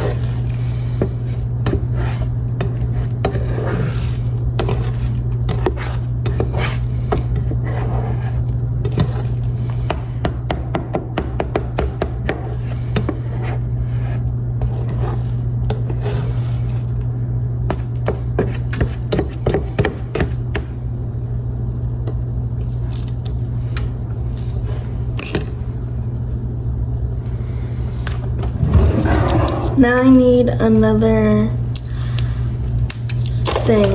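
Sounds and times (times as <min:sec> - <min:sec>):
low hum: 0:27.2 - 0:32.8.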